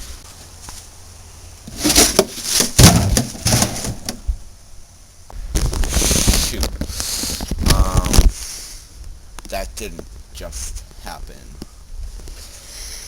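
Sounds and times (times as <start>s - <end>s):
sharp knocks and thumps: 1.7s - 4.4s.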